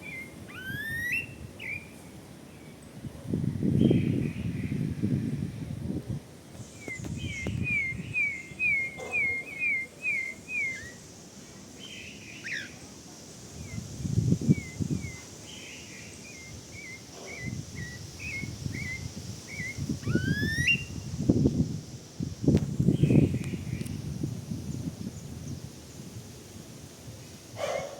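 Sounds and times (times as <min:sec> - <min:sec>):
songbird whistling: 0:00.0 - 0:01.9, 0:06.8 - 0:11.0, 0:11.9 - 0:12.8, 0:14.5 - 0:15.3, 0:16.2 - 0:21.0.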